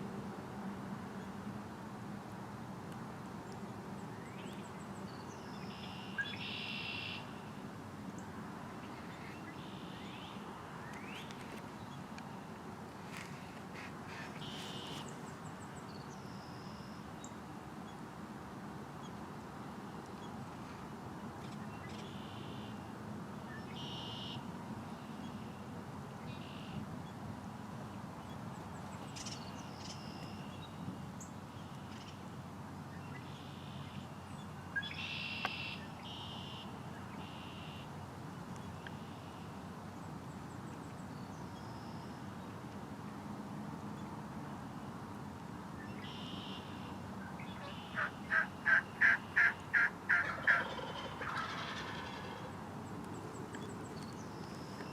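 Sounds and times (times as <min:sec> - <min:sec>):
songbirds calling: 0:03.4 - 0:07.6, 0:08.2 - 0:18.0, 0:20.0 - 0:27.2, 0:27.8 - 0:42.6, 0:45.8 - 0:54.9
turkey yelps: 0:47.6 - 0:52.5.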